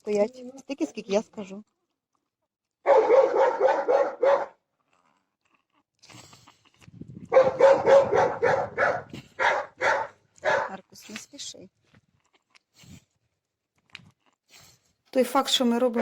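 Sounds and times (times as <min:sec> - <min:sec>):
dog barking: 0:02.9 - 0:04.6, 0:07.3 - 0:10.8.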